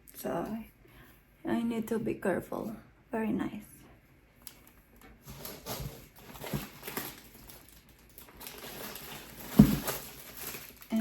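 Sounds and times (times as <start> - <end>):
packaging rustling: 4.4 - 11.0.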